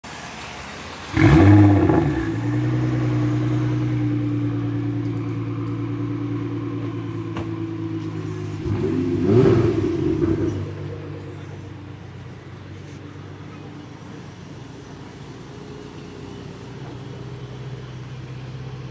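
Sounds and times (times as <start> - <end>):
sports car engine revving: 1.1 - 12.2.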